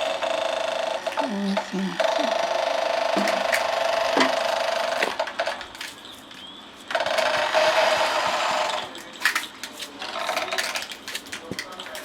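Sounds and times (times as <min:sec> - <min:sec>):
electric blender motor whine: 0:00.0 - 0:05.2, 0:07.0 - 0:08.8.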